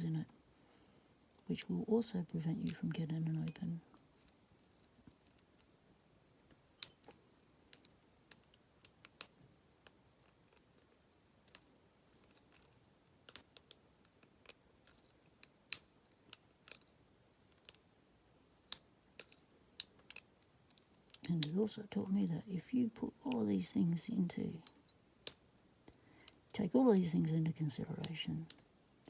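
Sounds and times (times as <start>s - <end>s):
lock pick clicking in padlock: 11.5s - 15.1s, 15.7s - 16.9s, 18.6s - 21.5s.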